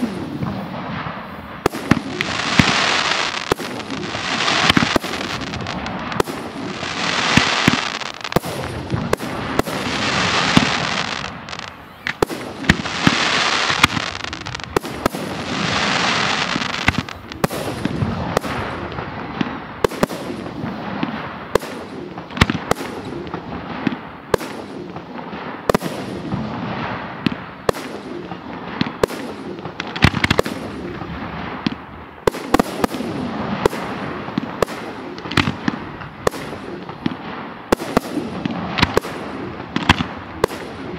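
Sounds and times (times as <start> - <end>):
firework hiss: 0.0 - 18.9
firework shells bursting: 1.7 - 18.9.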